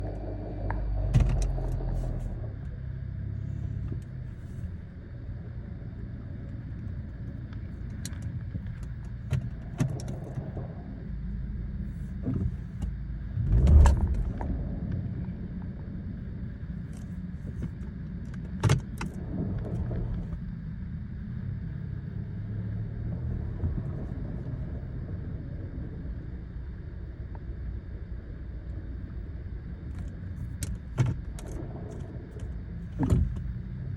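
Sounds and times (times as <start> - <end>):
car low rumble: 0.0 - 33.9
sharp clicks and knocks: 0.7 - 2.0, 17.5 - 19.1, 30.6 - 31.6, 33.0 - 33.5.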